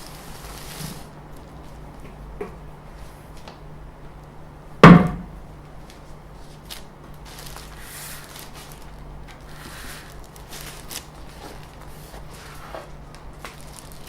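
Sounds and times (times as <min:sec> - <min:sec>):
loud thump: 0:04.8 - 0:05.4
packaging rustling: 0:06.6 - 0:14.0.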